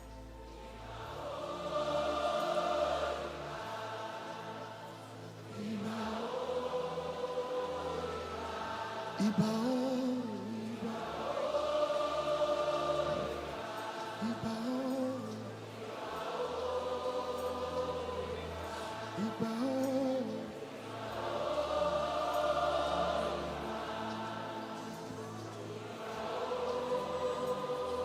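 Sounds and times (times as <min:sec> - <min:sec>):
congregation singing a chant: 0:00.0 - 0:28.0.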